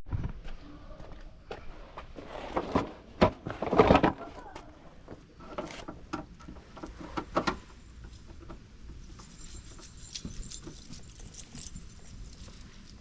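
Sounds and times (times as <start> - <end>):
hand tools clicking and rattling: 7.4 - 13.0
jingling clicks: 9.1 - 12.7.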